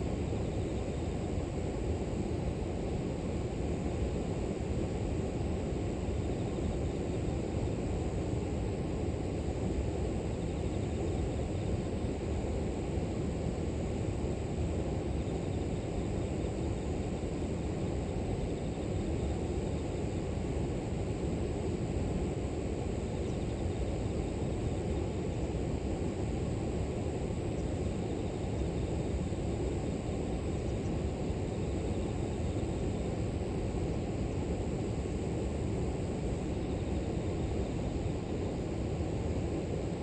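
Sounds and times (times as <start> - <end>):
grass insects droning: 0.0 - 2.6, 3.2 - 40.0.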